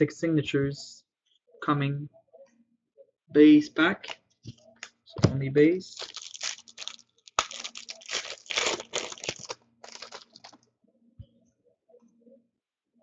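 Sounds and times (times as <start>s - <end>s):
foil wrapper tearing and crinkling: 6.0s - 10.6s.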